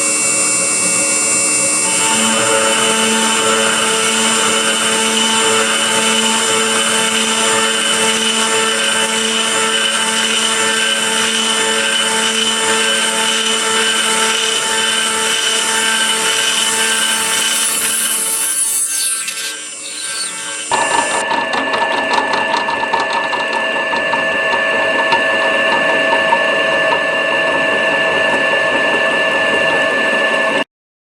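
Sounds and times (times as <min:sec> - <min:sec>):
router spindle whine: 0:00.0 - 0:30.6
high-pitched hiss: 0:15.0 - 0:21.2.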